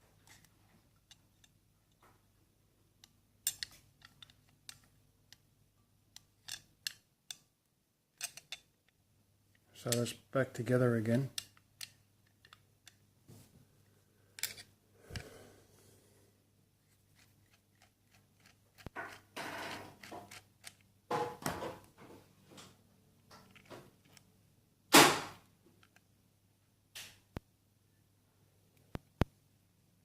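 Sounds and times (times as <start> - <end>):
small metal parts clicking: 3.0 - 5.4, 6.1 - 7.5, 8.1 - 8.7, 14.4 - 14.7.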